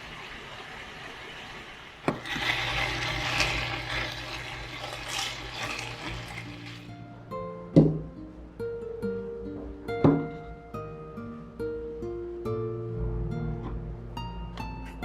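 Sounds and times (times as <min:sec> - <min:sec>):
water rushing: 0:00.0 - 0:06.9
soft plucked-string music: 0:05.1 - 0:15.0.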